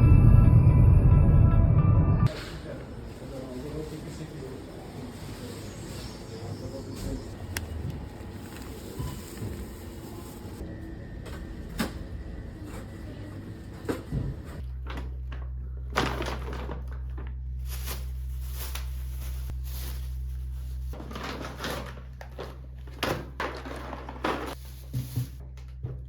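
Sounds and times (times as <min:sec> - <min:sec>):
appliance humming: 0:06.2 - 0:24.8.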